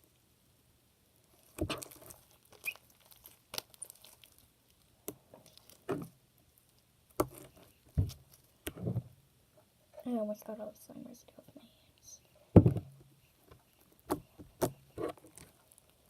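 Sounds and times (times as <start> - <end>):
slime squelching and popping: 1.3 - 6.2.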